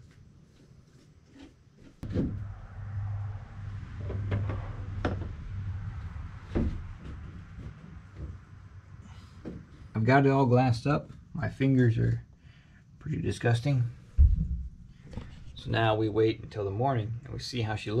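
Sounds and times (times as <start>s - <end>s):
low steady hum: 1.8s - 18.0s.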